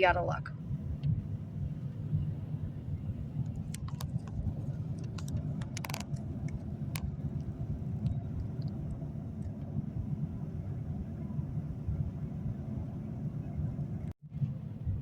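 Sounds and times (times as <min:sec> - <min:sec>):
car driving rumble: 0:00.0 - 0:15.0
light clicks and rattles: 0:03.5 - 0:09.7.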